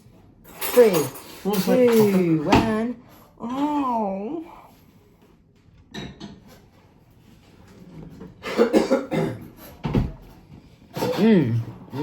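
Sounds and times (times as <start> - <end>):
person coughing: 8.4 - 9.5.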